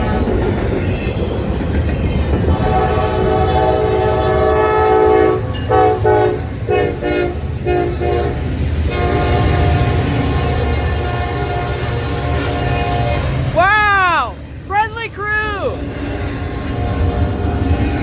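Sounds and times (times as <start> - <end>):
train rumble and wheel clatter: 0.0 - 18.0
locomotive air horn: 2.6 - 13.4, 16.1 - 18.0.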